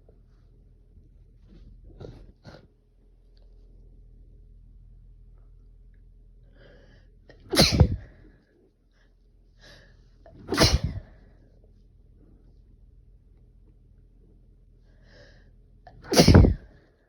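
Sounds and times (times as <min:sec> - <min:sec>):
faint in-breath: 0:06.4 - 0:08.3, 0:08.9 - 0:11.2, 0:14.8 - 0:15.6
person sneezing: 0:07.3 - 0:08.1, 0:10.4 - 0:11.1, 0:15.9 - 0:16.7.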